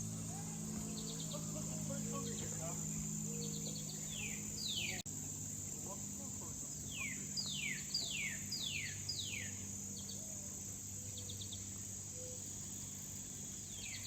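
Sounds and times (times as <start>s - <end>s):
high insect drone: 0.0s - 14.0s
bird chirps: 0.3s - 5.0s, 6.6s - 14.0s
bird whistling song: 3.2s - 5.0s, 6.9s - 10.2s, 13.6s - 14.0s.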